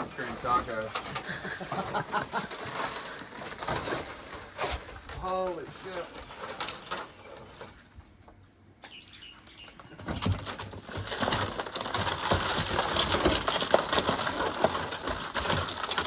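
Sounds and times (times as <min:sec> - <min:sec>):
cracked glass crackling and crunching: 0:00.0 - 0:04.9, 0:10.1 - 0:16.0.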